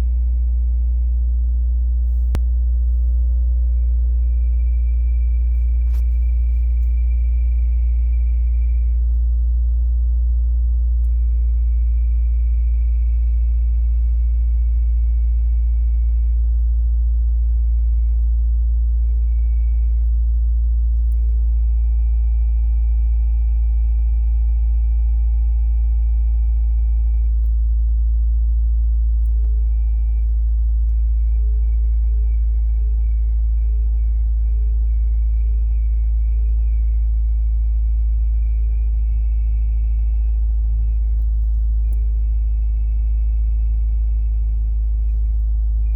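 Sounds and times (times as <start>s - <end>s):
car engine idling: 0.0s - 18.3s, 29.2s - 45.9s.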